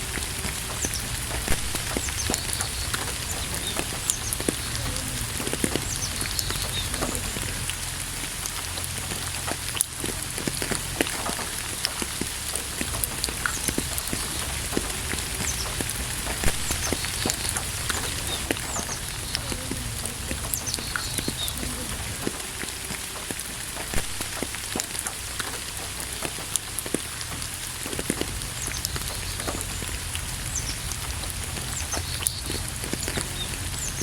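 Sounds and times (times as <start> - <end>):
birds chirping: 0.0 - 34.0
raindrops striking close by: 0.0 - 34.0
steady rain falling: 0.0 - 34.0.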